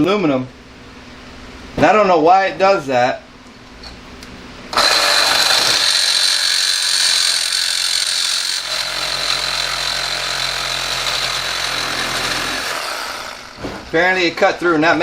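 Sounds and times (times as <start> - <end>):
reciprocating saw cutting metal: 4.7 - 13.7.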